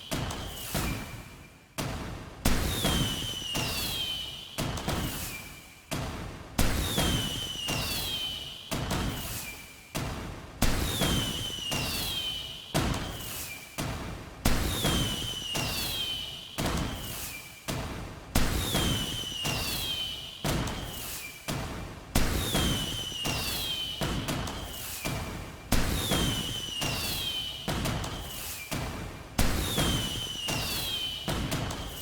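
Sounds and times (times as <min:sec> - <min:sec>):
falling whistling tone: 0:26.3 - 0:27.6, 0:29.8 - 0:31.2.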